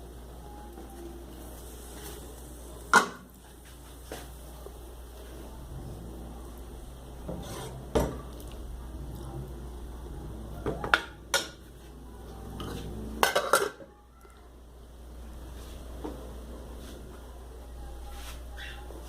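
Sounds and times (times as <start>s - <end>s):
pots and pans clattering: 2.9s - 3.3s, 12.6s - 13.9s.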